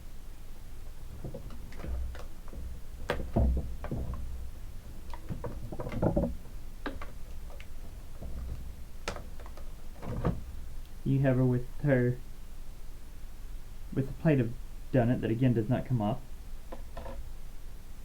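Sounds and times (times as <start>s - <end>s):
plastic packaging clicks and rustles: 5.0s - 10.6s.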